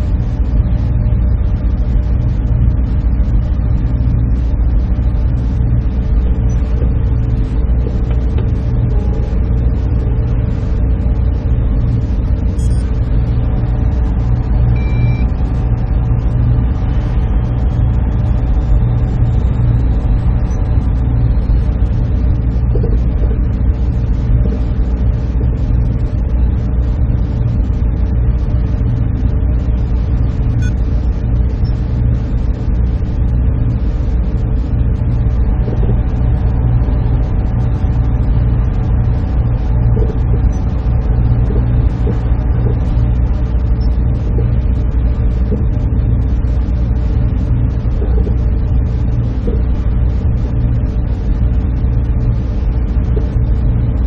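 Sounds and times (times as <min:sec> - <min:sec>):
cooling fans droning: 0:00.0 - 0:54.0
faint brief tones: 0:12.6 - 0:12.9.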